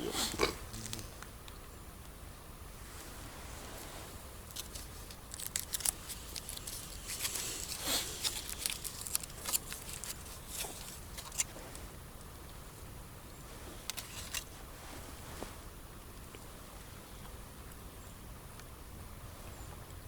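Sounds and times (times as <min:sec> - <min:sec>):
rustling and crinkling: 0:00.0 - 0:01.3, 0:02.8 - 0:12.0, 0:13.4 - 0:15.7.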